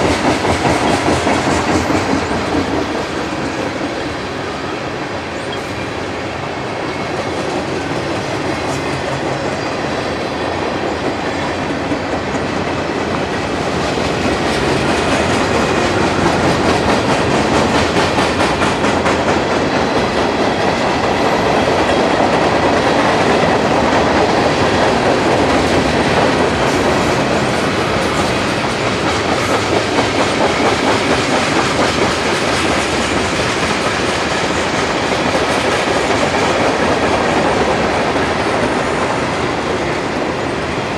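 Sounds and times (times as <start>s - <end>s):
train wheels clacking over rails: 0.0s - 40.9s.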